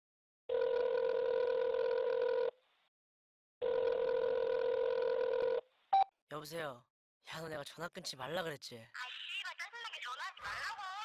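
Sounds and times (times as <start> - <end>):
telephone ringing tone beeps: 3.6 - 6.1.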